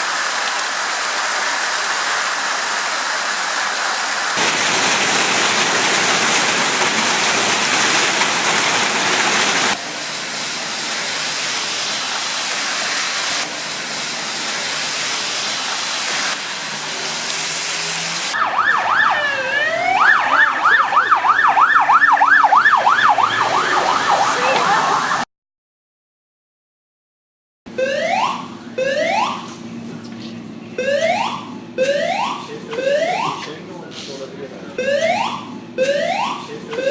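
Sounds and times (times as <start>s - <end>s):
hail and rain pelting: 0.0s - 18.4s
emergency vehicle siren: 17.9s - 25.3s, 27.7s - 29.6s, 30.8s - 33.5s, 34.8s - 36.9s.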